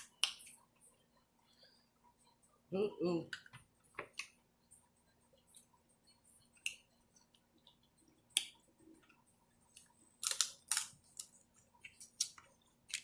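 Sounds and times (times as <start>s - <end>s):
crab shells cracking: 10.2s - 11.4s.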